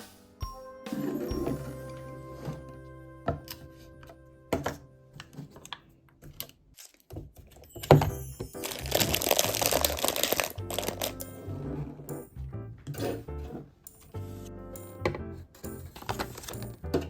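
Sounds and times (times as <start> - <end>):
soft background music: 0.0 - 6.6, 7.5 - 17.0
clicks and knocks of handled items: 4.6 - 11.1, 15.0 - 17.0
plastic packaging crinkling: 8.4 - 11.2.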